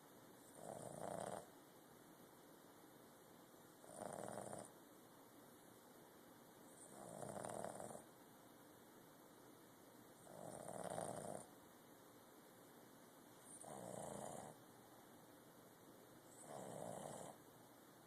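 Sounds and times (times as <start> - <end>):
puppy snoring: 0.4 - 1.5, 3.8 - 4.8, 6.7 - 8.1, 10.2 - 11.5, 13.4 - 14.6, 16.3 - 17.4.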